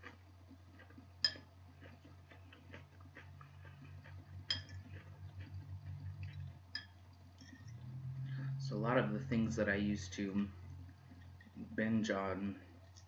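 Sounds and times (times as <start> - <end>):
soft eating clicks: 0.0 - 8.2, 9.4 - 13.0
low steady hum: 0.0 - 13.0
utensil clinking against dish: 4.5 - 4.9, 6.7 - 7.8.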